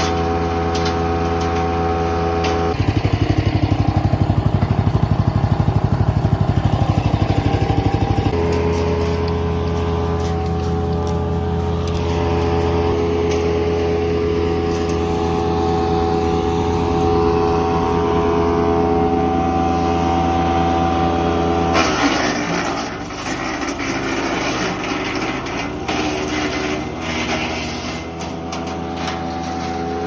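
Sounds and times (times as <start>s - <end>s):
rough noisy chipping: 0.0s - 30.0s
wood chipper engine running: 0.0s - 30.0s.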